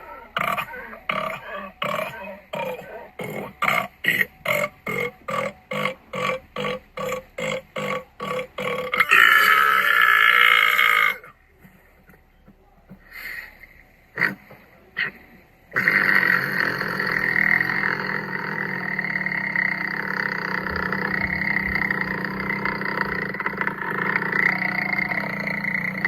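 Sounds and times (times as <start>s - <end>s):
person belching: 0.0s - 11.3s, 15.8s - 26.0s.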